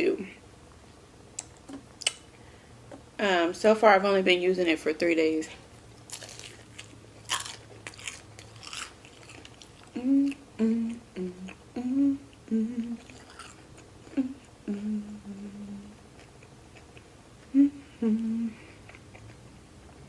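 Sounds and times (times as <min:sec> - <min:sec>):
crunchy chewing: 0:06.0 - 0:10.4, 0:13.0 - 0:14.2, 0:16.0 - 0:17.5
woman humming: 0:09.9 - 0:13.3, 0:14.0 - 0:16.0, 0:17.5 - 0:18.8.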